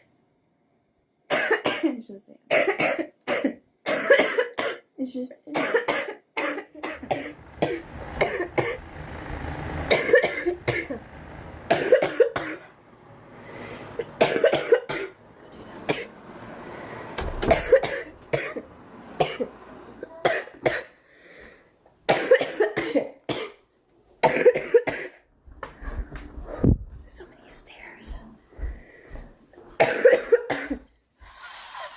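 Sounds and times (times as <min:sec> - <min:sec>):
woman coughing: 0:01.3 - 0:08.8, 0:11.7 - 0:12.6, 0:14.1 - 0:15.2, 0:17.5 - 0:18.6, 0:19.2 - 0:20.9, 0:22.1 - 0:23.6, 0:24.2 - 0:25.2, 0:29.8 - 0:30.8
breathy inhalations: 0:13.2 - 0:14.1, 0:21.0 - 0:21.8.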